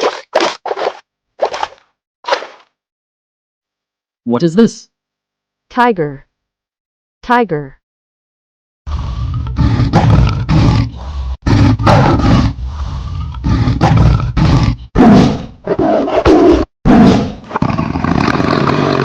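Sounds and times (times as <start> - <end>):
tiger roaring and growling: 8.9 - 19.0.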